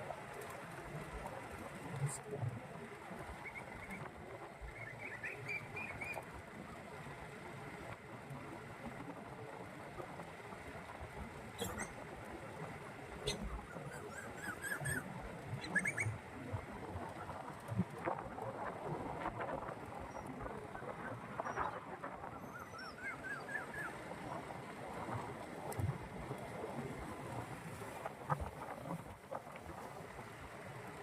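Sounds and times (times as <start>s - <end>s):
steady outdoor hiss: 0.0s - 31.0s
quick chirping calls: 11.6s - 12.0s, 15.6s - 16.2s.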